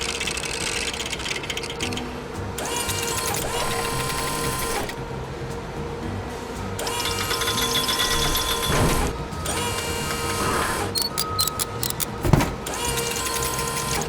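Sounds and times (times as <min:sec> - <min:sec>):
music: 0:00.0 - 0:14.0
mechanical rattling buzz: 0:06.8 - 0:14.0.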